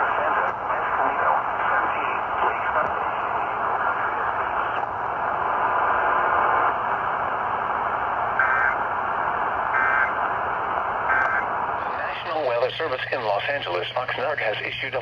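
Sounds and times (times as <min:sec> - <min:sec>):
radio static hiss: 0:00.0 - 0:15.0.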